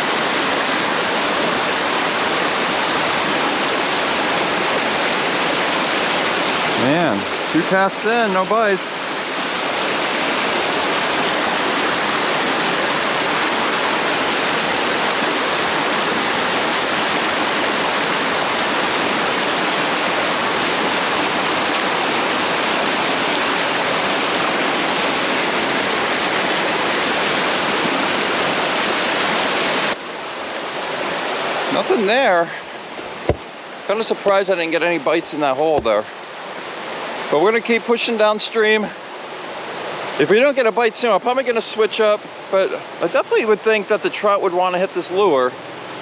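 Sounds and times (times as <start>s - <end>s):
stream water rushing: 0.0s - 46.0s.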